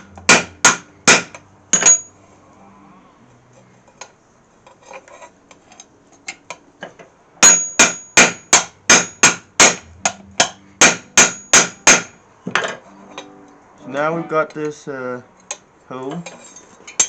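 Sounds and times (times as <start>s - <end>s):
hammer striking punch on metal: 0.0s - 2.1s, 7.4s - 12.2s.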